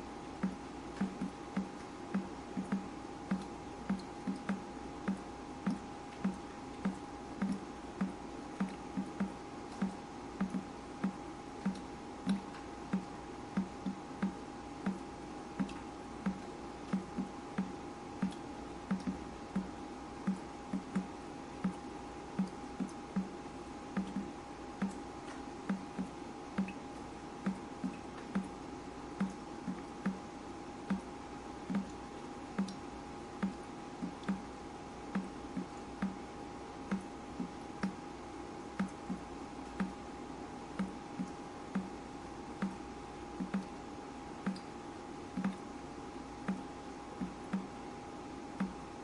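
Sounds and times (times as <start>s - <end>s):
faint steady hum: 0.0s - 49.0s
water dripping: 0.4s - 25.0s, 25.7s - 28.6s, 29.2s - 30.2s, 30.8s - 34.5s, 35.1s - 36.2s, 36.9s - 38.0s, 38.8s - 40.0s, 40.8s - 41.9s, 44.4s - 44.7s, 45.4s - 45.7s.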